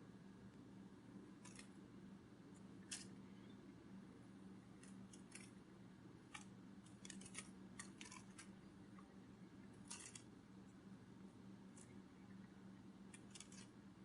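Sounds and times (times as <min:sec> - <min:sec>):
faint low hum: 0:00.0 - 0:14.0
soft irregular ticks: 0:01.4 - 0:01.9, 0:02.5 - 0:03.5, 0:04.7 - 0:05.6, 0:06.3 - 0:10.8, 0:11.7 - 0:14.0.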